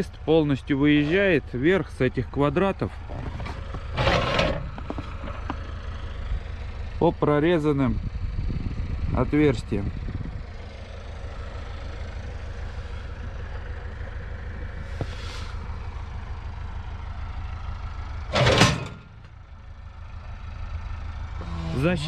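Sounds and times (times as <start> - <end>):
diesel tractor idling: 0.0 - 22.0
short loud clatter: 18.3 - 19.3.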